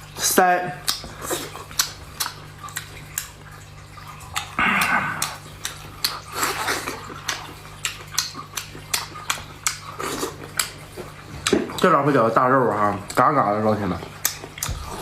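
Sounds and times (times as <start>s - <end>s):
wet chewing and lip-smacking: 0.0s - 15.0s
loud slurp: 4.4s - 7.4s.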